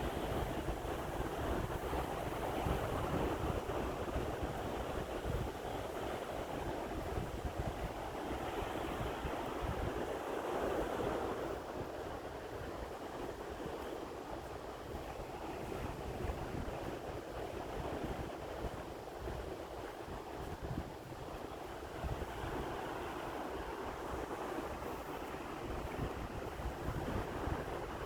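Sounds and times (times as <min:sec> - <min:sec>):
wind gusting on microphone: 0:20.1 - 0:28.0.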